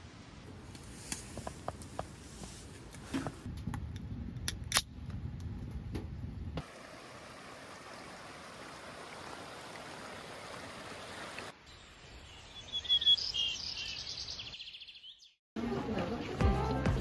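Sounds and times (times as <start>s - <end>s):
outdoor background: 0.0s - 17.0s
stream water rushing: 6.6s - 11.6s
small birds chirping: 10.3s - 15.4s.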